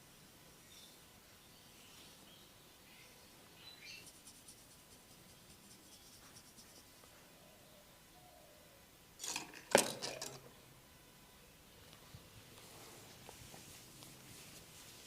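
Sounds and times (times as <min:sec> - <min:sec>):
hands rubbing and scratching: 0:03.9 - 0:07.1.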